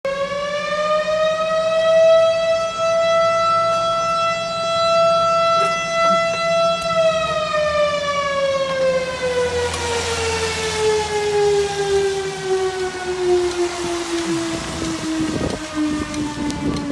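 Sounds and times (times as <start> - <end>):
fire siren winding: 0.1 - 16.9.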